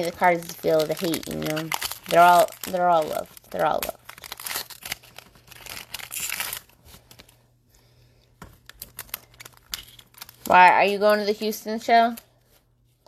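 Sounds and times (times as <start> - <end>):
wrapper crinkling and tearing: 0.0 - 7.4, 8.6 - 11.4.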